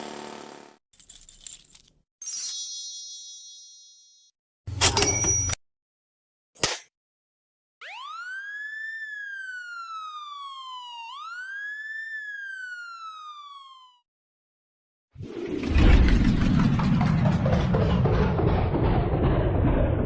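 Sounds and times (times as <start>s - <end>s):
electronic wailing siren: 7.8s - 14.1s.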